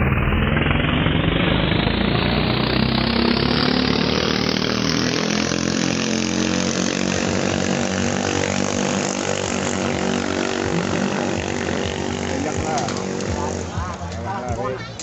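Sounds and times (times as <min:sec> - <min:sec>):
racing boat engines at high revs: 0:00.0 - 0:14.8.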